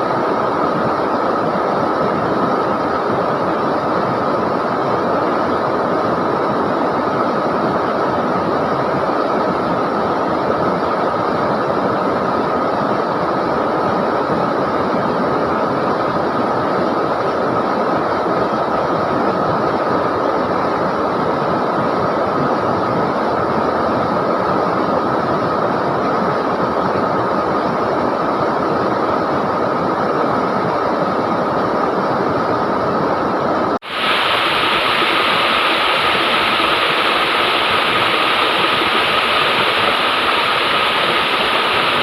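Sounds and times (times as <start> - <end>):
river water rushing: 33.8 - 42.0.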